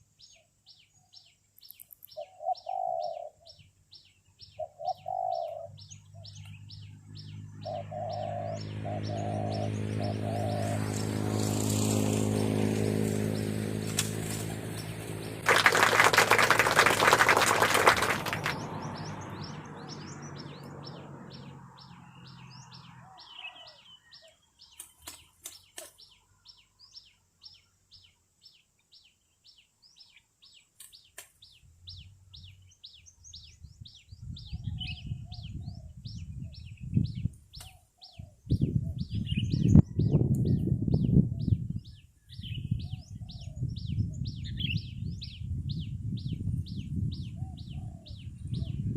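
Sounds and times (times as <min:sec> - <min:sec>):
bird chirping: 0:00.0 - 0:11.2, 0:17.7 - 0:48.9
loud rustle: 0:13.8 - 0:15.1
low rumbles of wind noise: 0:31.5 - 0:48.9.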